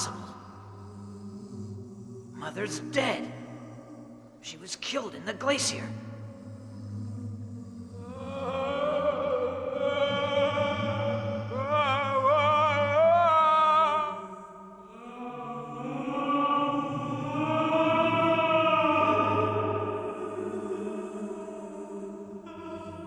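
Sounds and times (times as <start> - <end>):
high wordless voice singing: 0.0 - 0.6, 2.3 - 6.2
choir: 0.0 - 23.0.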